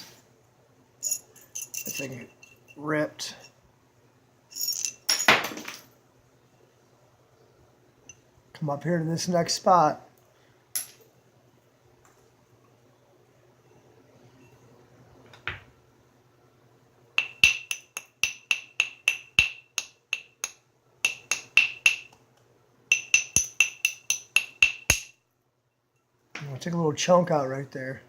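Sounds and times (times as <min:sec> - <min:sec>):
knapping tool tapping stone: 0:17.2 - 0:22.2, 0:22.9 - 0:25.2.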